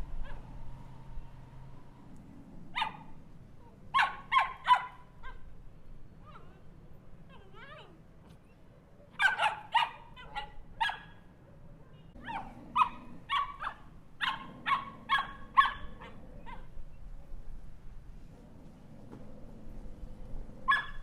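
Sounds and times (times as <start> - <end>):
small dog yapping: 0.2 - 0.5, 2.7 - 3.1, 3.9 - 5.5, 9.1 - 11.2, 12.2 - 16.8, 20.6 - 21.0.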